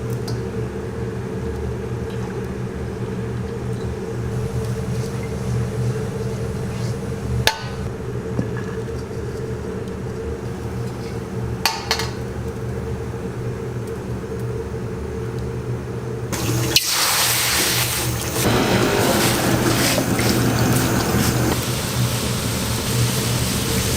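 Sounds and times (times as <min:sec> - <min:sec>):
low mechanical hum: 0:00.0 - 0:23.9
food sizzling in a hot pan: 0:16.4 - 0:23.9.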